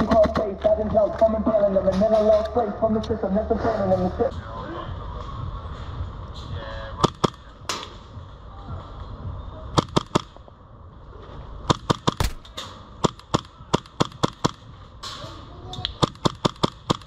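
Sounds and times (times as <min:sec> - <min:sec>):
airsoft guns firing: 0:11.7 - 0:14.6.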